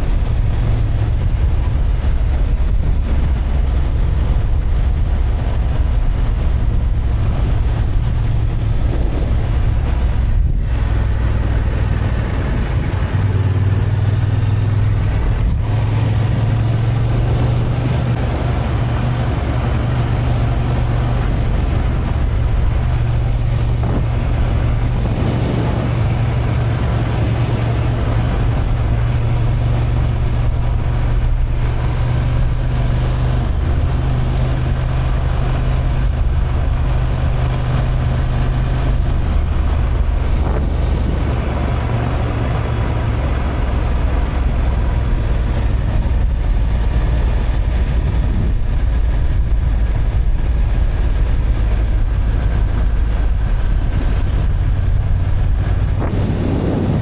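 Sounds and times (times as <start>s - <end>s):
motorcycle engine running: 0.0s - 57.0s
wind noise on microphone: 0.0s - 57.0s.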